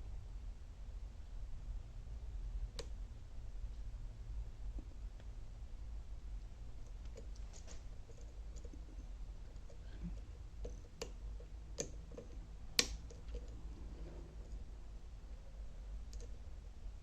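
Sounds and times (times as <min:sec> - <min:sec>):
steady low hum: 0:00.0 - 0:17.0
lock pick clicking in lock: 0:11.8 - 0:13.6.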